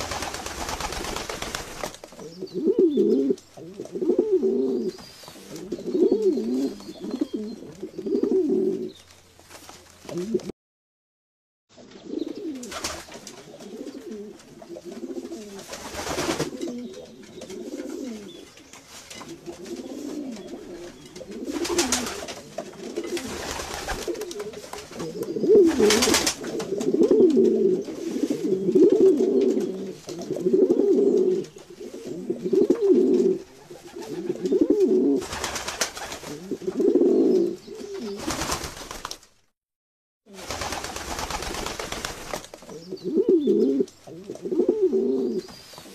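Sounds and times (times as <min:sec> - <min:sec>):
pigeons cooing: 0:02.1 - 0:09.0, 0:10.1 - 0:10.5, 0:11.8 - 0:18.5, 0:19.3 - 0:38.4, 0:42.7 - 0:45.6.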